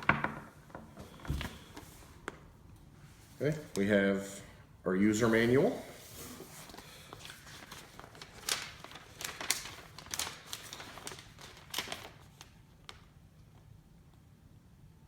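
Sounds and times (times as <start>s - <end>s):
paper and packaging rustling: 5.2s - 13.1s.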